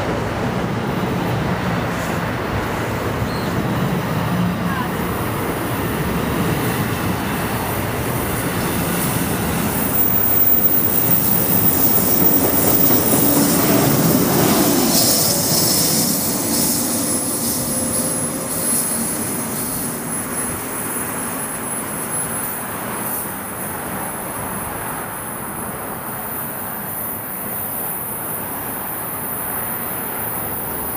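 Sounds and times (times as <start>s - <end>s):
train rumbling past: 0.0s - 30.9s
high wheel squeal: 8.6s - 22.5s.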